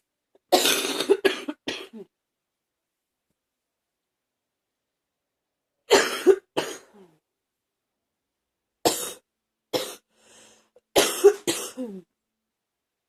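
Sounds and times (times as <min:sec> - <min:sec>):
person coughing hard: 0:00.5 - 0:02.1, 0:05.9 - 0:07.0, 0:08.9 - 0:09.2, 0:09.8 - 0:10.1, 0:11.0 - 0:12.0.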